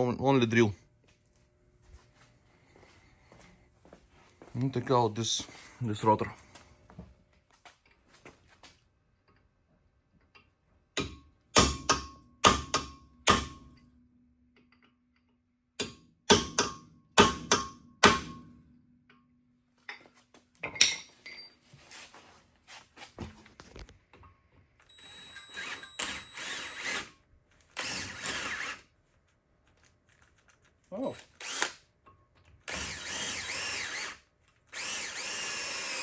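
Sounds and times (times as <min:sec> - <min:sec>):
hammer striking metal rotor: 0:11.0 - 0:13.7, 0:15.8 - 0:18.4.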